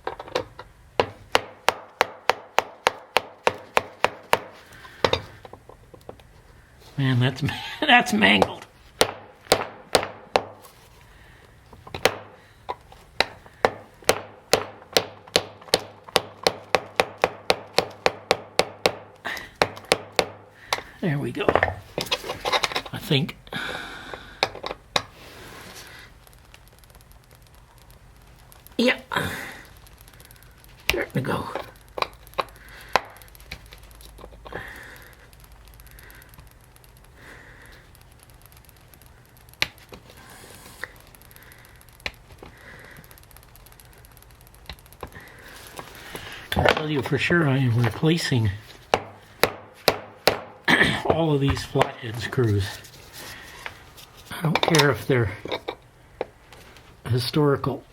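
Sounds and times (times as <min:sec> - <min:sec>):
soft rustling: 0:10.6 - 0:11.9, 0:51.5 - 0:54.4
hammer tapping screwdriver handle: 0:30.8 - 0:35.2.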